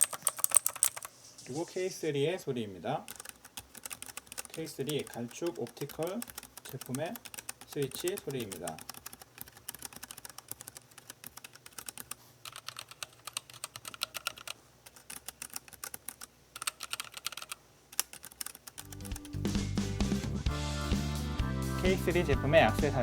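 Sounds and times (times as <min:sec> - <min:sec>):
keyboard key clicks: 0:00.0 - 0:01.1, 0:03.1 - 0:19.4
background music: 0:18.8 - 0:23.0.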